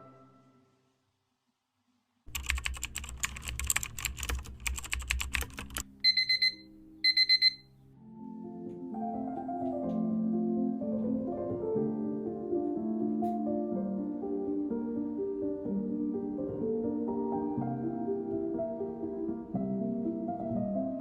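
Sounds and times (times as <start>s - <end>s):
soft music: 0.0s - 0.9s, 2.3s - 21.0s
rapid clicking: 2.3s - 5.8s.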